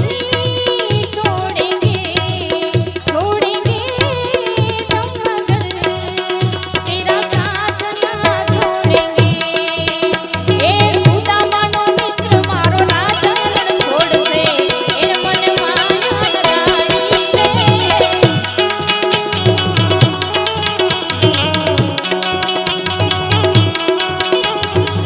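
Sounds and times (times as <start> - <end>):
person singing: 0.0 - 22.6
tabla playing: 0.0 - 25.0
held instrumental notes: 12.2 - 25.0.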